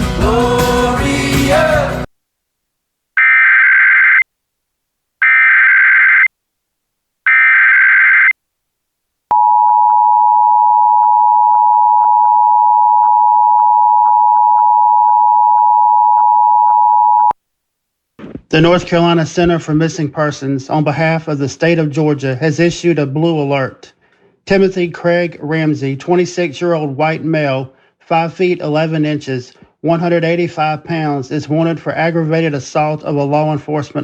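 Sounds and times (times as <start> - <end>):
music: 0.0 - 2.1.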